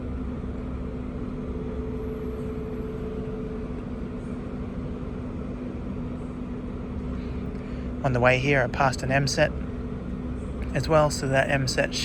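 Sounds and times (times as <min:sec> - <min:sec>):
electric train humming: 0:00.0 - 0:12.0
steady electrical tones: 0:07.3 - 0:12.0.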